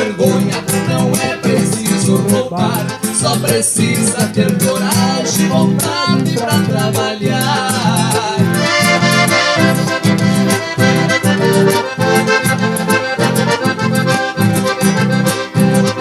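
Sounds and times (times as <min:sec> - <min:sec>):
accordion playing: 0:00.0 - 0:16.0
bouncing bass accompaniment: 0:00.0 - 0:16.0.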